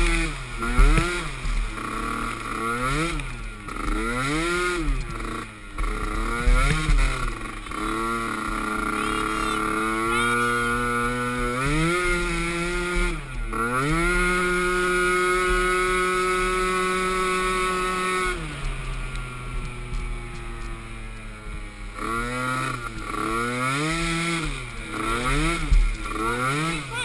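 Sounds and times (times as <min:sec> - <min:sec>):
small atv engine revving: 0:00.0 - 0:27.0.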